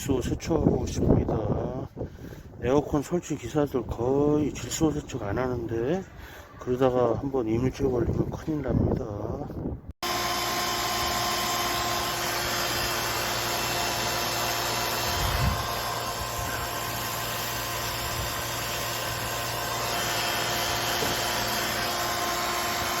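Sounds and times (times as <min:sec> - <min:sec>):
gas rushing hiss: 0:10.0 - 0:23.0.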